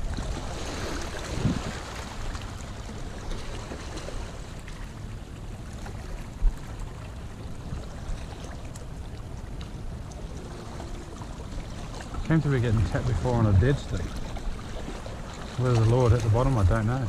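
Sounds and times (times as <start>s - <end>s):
wind rumbling on microphone: 0.0s - 4.8s, 5.6s - 17.0s
water lapping: 0.0s - 17.0s.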